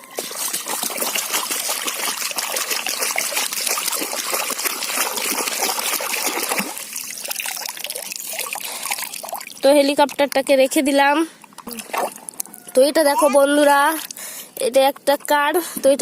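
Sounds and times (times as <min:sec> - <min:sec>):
water trickling and splashing: 0:00.0 - 0:10.6, 0:11.3 - 0:12.4.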